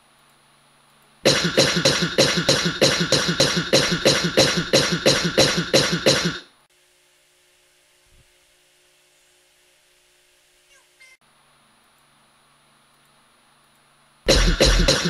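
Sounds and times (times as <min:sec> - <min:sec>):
faint steady hum: 0:00.0 - 0:15.0
chopped repeated cough: 0:01.3 - 0:06.4, 0:14.3 - 0:15.0.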